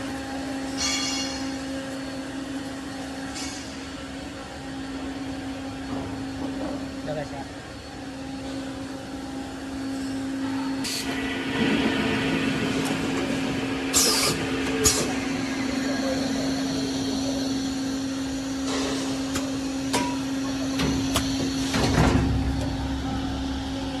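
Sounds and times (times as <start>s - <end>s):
machine hum: 4.9s - 24.0s.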